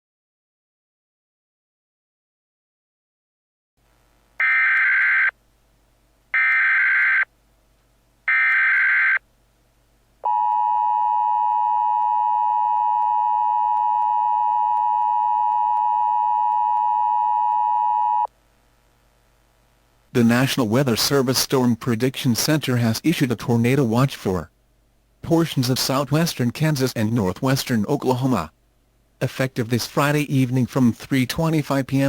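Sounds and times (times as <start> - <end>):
two-tone alarm: 4.4 - 5.3, 6.4 - 7.3, 8.3 - 9.2, 10.3 - 18.3.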